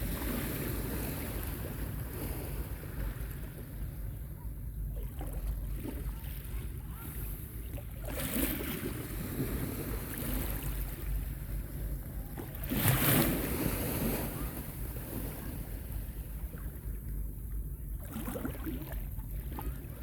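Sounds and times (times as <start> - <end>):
wind rumble on microphone: 0.0 - 20.0
small waves washing on beach: 5.0 - 16.8.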